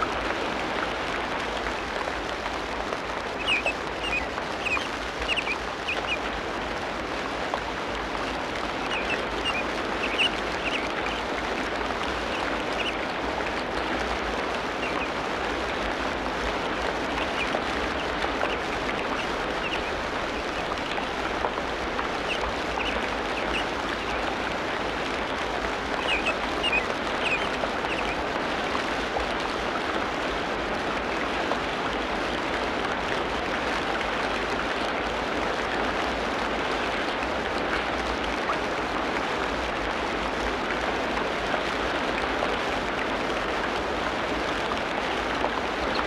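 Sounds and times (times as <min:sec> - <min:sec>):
dense water noise: 0:00.0 - 0:46.0.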